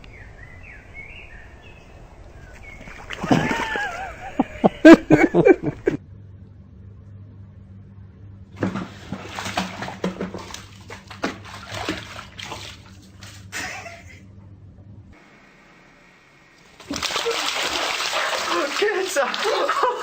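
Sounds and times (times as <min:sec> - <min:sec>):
steady low hum: 0:00.0 - 0:18.0
water splashing in a tub: 0:02.5 - 0:04.2, 0:08.6 - 0:13.8, 0:16.6 - 0:20.0.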